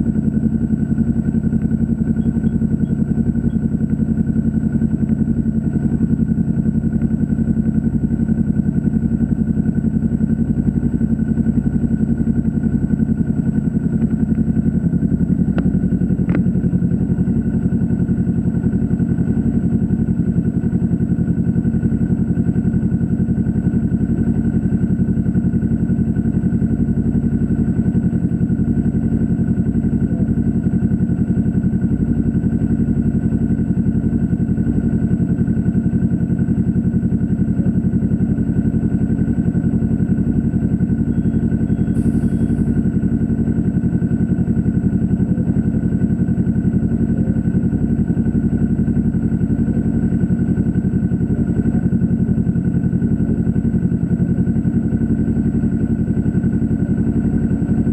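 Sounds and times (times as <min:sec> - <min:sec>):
faint high whine: 0:40.9 - 0:42.8.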